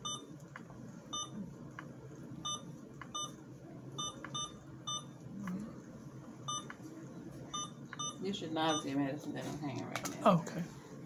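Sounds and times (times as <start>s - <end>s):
infusion pump electronic beeps: 0.0s - 0.3s, 1.1s - 1.4s, 2.4s - 3.4s, 4.0s - 5.2s, 6.5s - 6.8s, 7.5s - 8.9s.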